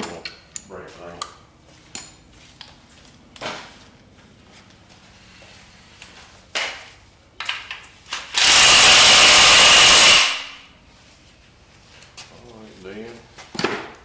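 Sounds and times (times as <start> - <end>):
pneumatic impact wrench: 8.2 - 10.6.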